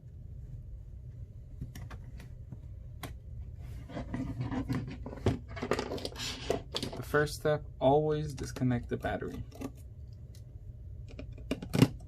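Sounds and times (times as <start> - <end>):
steady low hum: 0.0 - 12.0
rubbing and scraping: 3.5 - 7.1.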